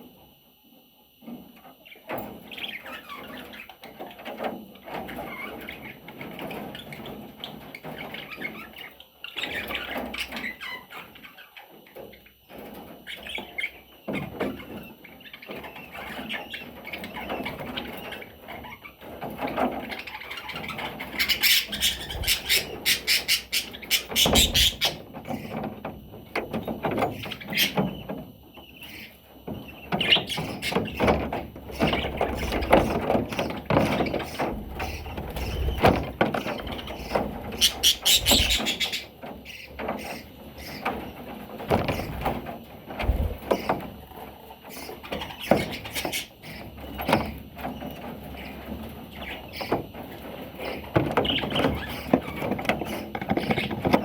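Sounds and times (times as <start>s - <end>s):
budgerigar chattering and chirping: 19.9s - 25.6s, 31.7s - 40.9s, 44.7s - 46.7s.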